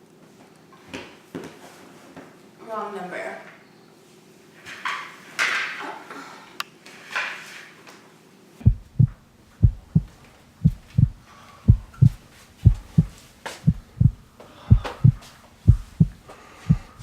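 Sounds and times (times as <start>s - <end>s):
heartbeat thumps: 8.6s - 17.0s.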